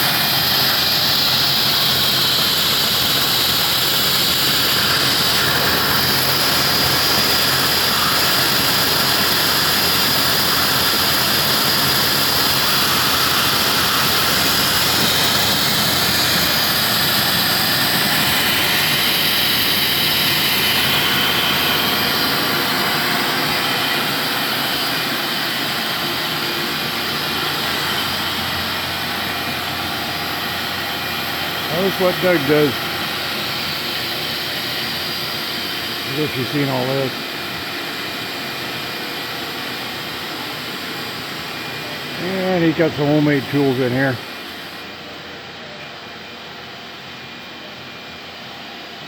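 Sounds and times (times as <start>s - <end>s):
milling machine whining: 0.0s - 48.8s.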